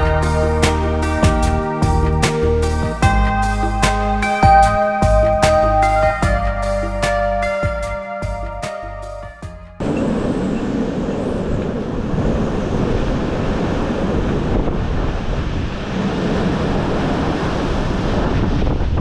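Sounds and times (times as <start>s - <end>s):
music notes: 0.0s - 10.2s.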